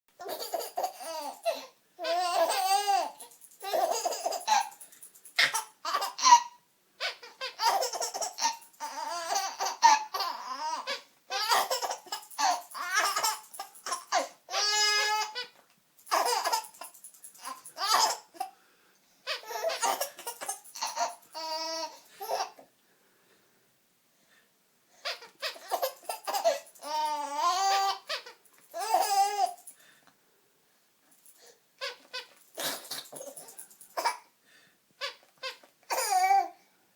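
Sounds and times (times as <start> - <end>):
small child giggling: 0.2 - 4.8, 5.4 - 15.3, 16.1 - 18.5, 19.3 - 22.6, 25.1 - 29.5
child squealing: 5.4 - 15.5.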